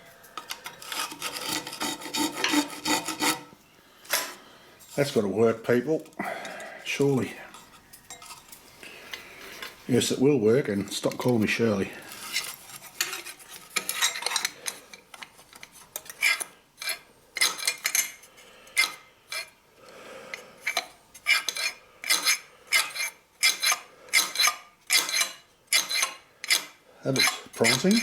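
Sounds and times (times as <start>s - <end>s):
metal parts scraping and clinking: 7.5s - 8.6s, 12.1s - 19.5s.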